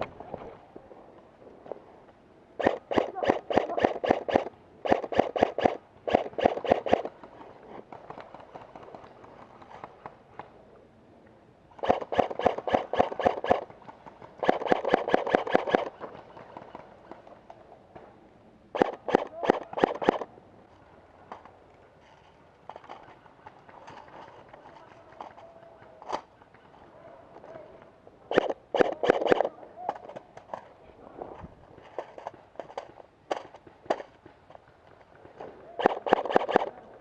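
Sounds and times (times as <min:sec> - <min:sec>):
airsoft guns firing bursts: 0:02.6 - 0:07.2, 0:11.8 - 0:16.6, 0:18.8 - 0:20.3, 0:28.3 - 0:29.5, 0:35.2 - 0:36.9.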